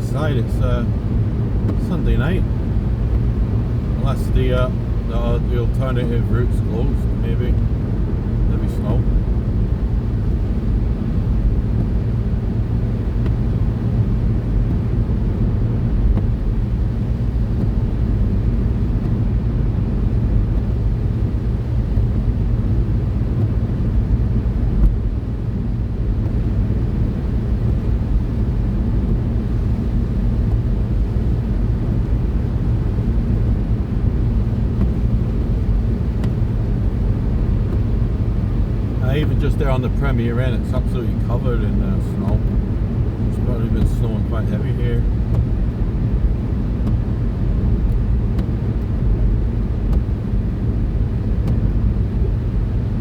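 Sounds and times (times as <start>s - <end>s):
car road and engine rumble: 0.0s - 53.0s.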